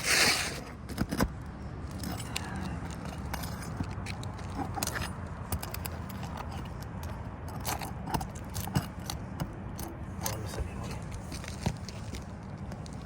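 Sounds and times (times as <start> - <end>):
metal tool clicking and scraping: 1.9 - 10.5.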